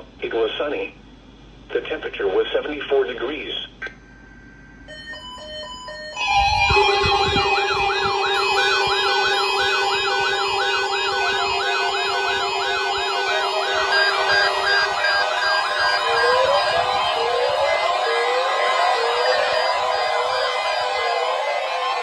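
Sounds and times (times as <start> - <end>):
loud steady low tone: 4.8 - 22.0
stepped electronic beeps: 4.9 - 22.0
warbling siren wails: 4.9 - 22.0.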